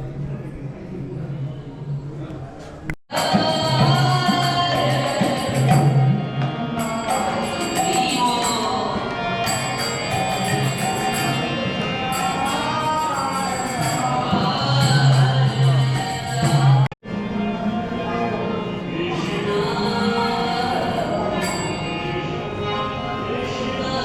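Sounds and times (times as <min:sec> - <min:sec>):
jingling hand percussion: 0:03.1 - 0:17.0, 0:20.9 - 0:22.2.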